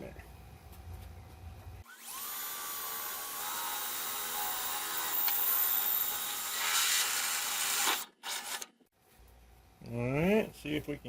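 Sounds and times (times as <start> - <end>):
electric drill boring metal: 1.9 - 8.6.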